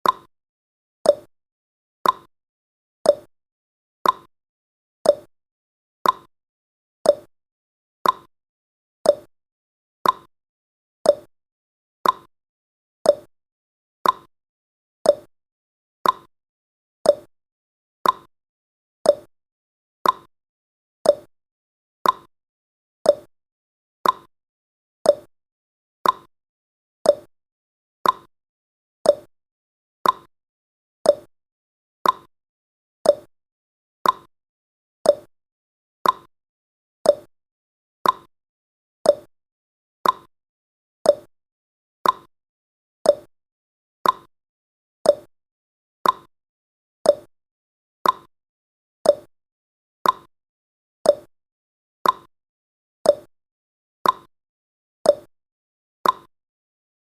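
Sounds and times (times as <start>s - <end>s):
timer ticking: 0.0s - 0.3s, 1.1s - 1.3s, 2.0s - 2.3s, 3.1s - 3.3s, 4.0s - 4.3s, 5.1s - 5.3s, 6.0s - 6.3s, 7.1s - 7.3s, 8.0s - 8.3s, 9.1s - 9.3s, 10.0s - 10.3s, 11.1s - 11.3s, 12.0s - 12.3s, 13.1s - 13.3s, 14.0s - 14.3s, 15.1s - 15.3s, 16.0s - 16.3s, 17.1s - 17.3s, 18.0s - 18.3s, 19.1s - 19.3s, 20.0s - 20.3s, 21.0s - 21.3s, 22.0s - 22.3s, 23.1s - 23.3s, 24.0s - 24.3s, 25.1s - 25.3s, 26.0s - 26.3s, 27.1s - 27.3s, 28.0s - 28.3s, 29.0s - 29.3s, 30.0s - 30.3s, 31.1s - 31.3s, 32.0s - 32.3s, 33.0s - 33.3s, 34.0s - 34.3s, 35.1s - 35.3s, 36.0s - 36.3s, 37.1s - 37.3s, 38.0s - 38.3s, 39.1s - 39.3s, 40.0s - 40.3s, 41.1s - 41.3s, 42.0s - 42.3s, 43.1s - 43.3s, 44.0s - 44.3s, 45.1s - 45.3s, 46.0s - 46.3s, 47.1s - 47.3s, 48.0s - 48.3s, 49.1s - 49.3s, 50.0s - 50.3s, 51.1s - 51.3s, 52.0s - 52.3s, 53.1s - 53.3s, 54.0s - 54.3s, 55.1s - 55.3s, 56.0s - 56.3s.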